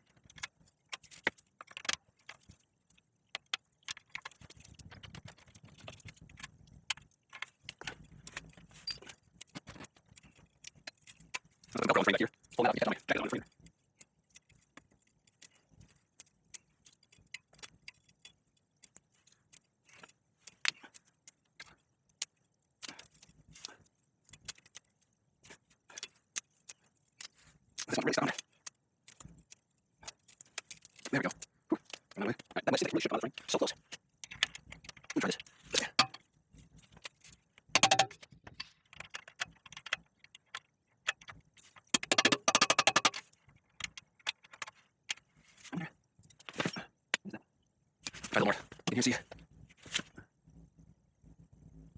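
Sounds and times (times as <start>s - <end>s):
metallic tool clicks and knocks: 35.8s - 36.3s, 37.8s - 45.2s.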